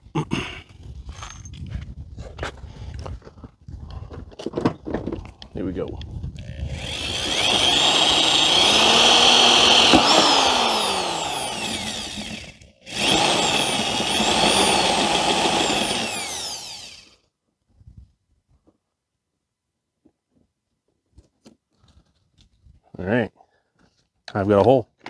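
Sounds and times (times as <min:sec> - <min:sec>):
power drill boring a hole: 0:06.5 - 0:17.2.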